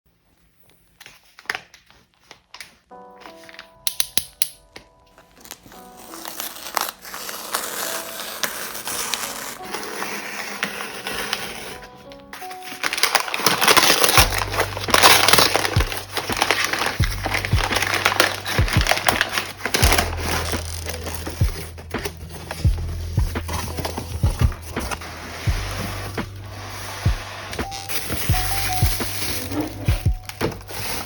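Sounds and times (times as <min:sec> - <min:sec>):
packaging crinkling: 0:05.1 - 0:31.0
background music with beat: 0:14.2 - 0:31.0.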